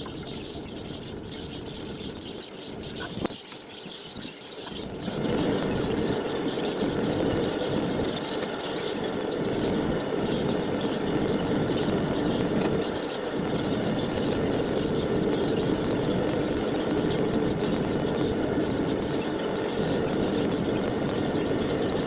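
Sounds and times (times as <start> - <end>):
furnace flame rushing: 4.8 - 22.0.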